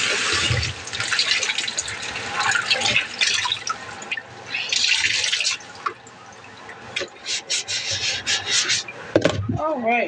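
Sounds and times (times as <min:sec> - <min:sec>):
tap water splashing in sink: 0:00.0 - 0:07.2.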